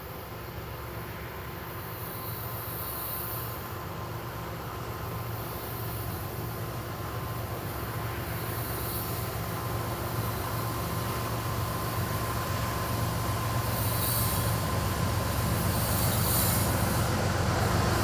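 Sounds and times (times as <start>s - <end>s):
diesel locomotives humming: 3.6s - 18.0s.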